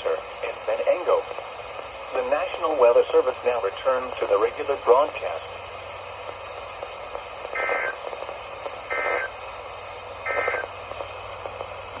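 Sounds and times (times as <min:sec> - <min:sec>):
radio static: 0:00.0 - 0:12.0
digital data tone bursts: 0:08.9 - 0:09.3, 0:10.3 - 0:10.7.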